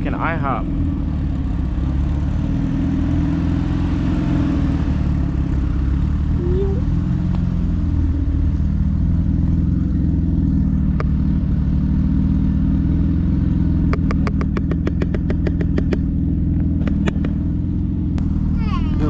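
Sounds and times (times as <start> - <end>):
car engine idling: 0.0 - 19.0.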